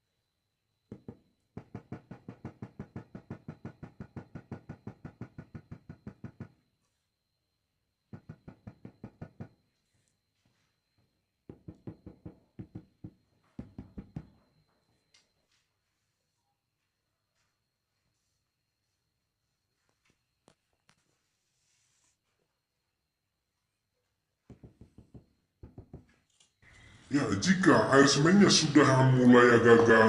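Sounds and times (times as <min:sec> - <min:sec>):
rapid knocking on ceramic tiles: 0:00.9 - 0:06.6, 0:08.1 - 0:09.8, 0:11.5 - 0:14.4, 0:24.5 - 0:26.2.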